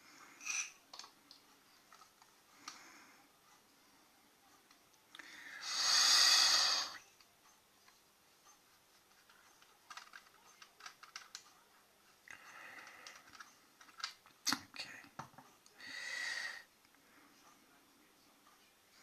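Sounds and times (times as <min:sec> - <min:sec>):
small hard parts clicking and tapping: 0:00.4 - 0:02.8, 0:07.2 - 0:11.6, 0:12.2 - 0:15.5
short breathy hisses: 0:05.5 - 0:07.0.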